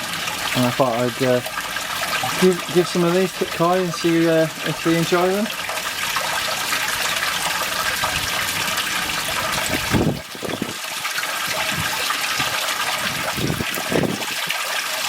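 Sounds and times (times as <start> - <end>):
running water splashing: 0.0 - 15.0.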